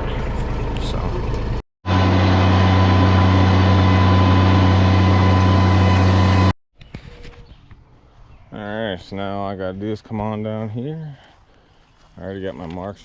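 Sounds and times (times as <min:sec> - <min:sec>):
heavy engine humming: 0:00.0 - 0:06.5.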